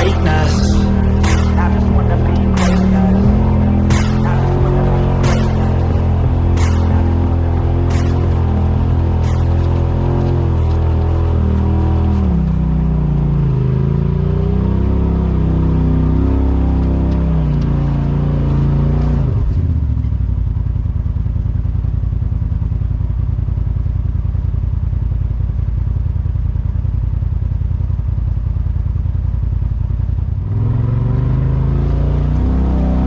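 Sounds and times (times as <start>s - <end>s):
utility vehicle engine idling: 0.0s - 11.0s.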